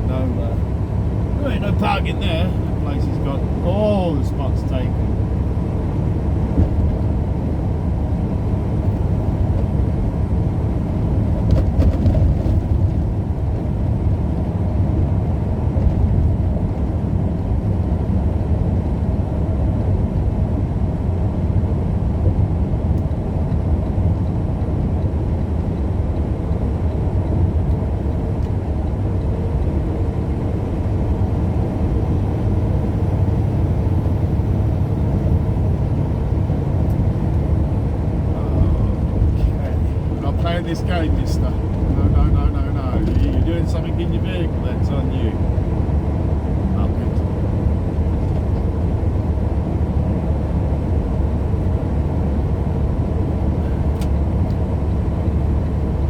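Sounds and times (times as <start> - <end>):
vehicle engine and road rumble: 0.0 - 56.0.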